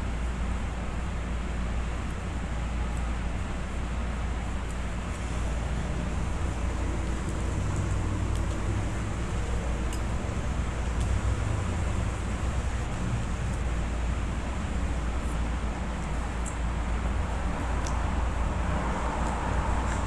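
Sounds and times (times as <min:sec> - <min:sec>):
faint light ticks: 0:10.9 - 0:11.3, 0:17.8 - 0:18.1.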